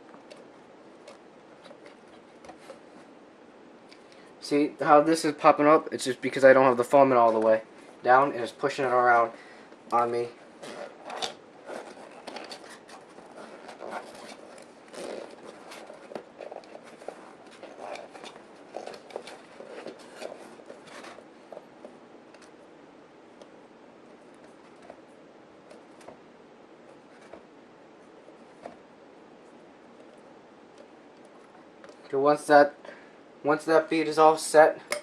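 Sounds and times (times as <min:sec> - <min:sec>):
rubber tire rubbing and rustling: 0:10.4 - 0:21.9.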